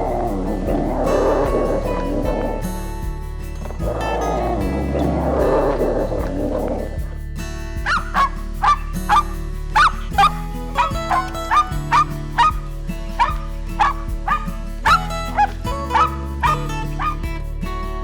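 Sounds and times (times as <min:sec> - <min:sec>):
background music with held notes: 0:00.0 - 0:18.0
animal yipping calls: 0:07.9 - 0:17.2.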